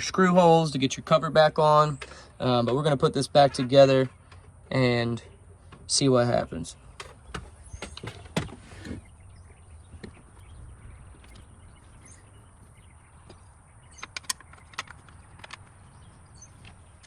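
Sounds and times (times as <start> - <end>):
small parts clicking and knocking: 14.0 - 15.8.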